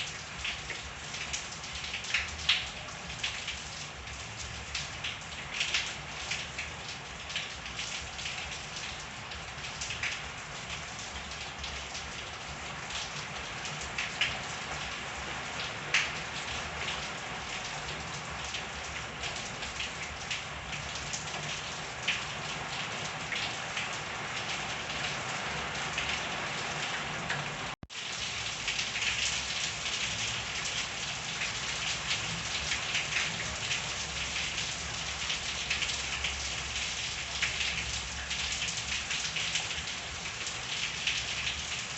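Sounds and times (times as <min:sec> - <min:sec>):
steady rain falling: 0:00.0 - 0:41.9.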